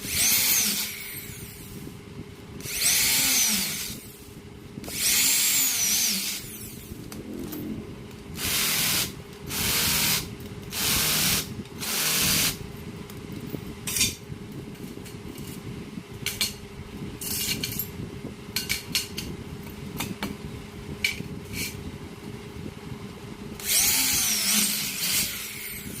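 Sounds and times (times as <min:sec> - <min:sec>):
electric drill humming: 0:08.4 - 0:12.6, 0:23.6 - 0:25.8.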